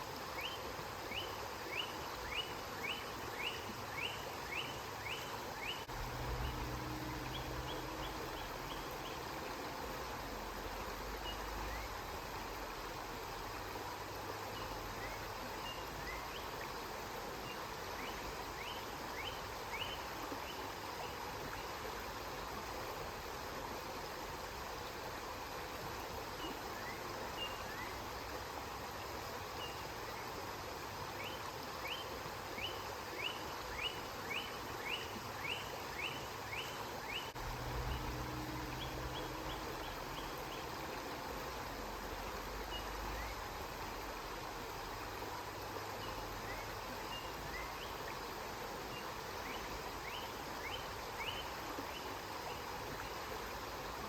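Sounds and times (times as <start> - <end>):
river water flowing: 0.0 - 54.0
faint low rumble: 5.9 - 9.2, 37.4 - 40.7.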